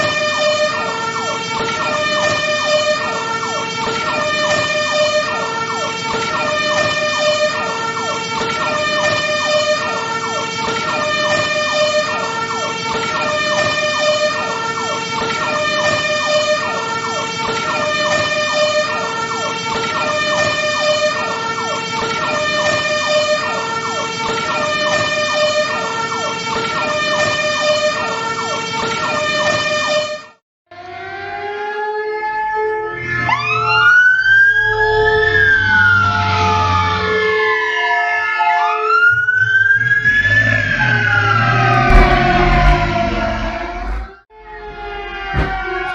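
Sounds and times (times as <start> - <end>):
two-tone fire truck siren: 0.0 - 45.9
wailing siren: 0.0 - 45.9
low engine rumble: 40.6 - 44.2.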